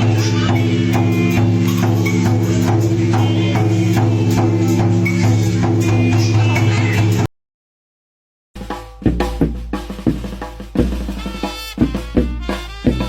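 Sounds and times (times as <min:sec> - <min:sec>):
drum struck in an even beat: 0:00.0 - 0:07.3, 0:08.6 - 0:13.0
steady low held tone: 0:00.0 - 0:07.3.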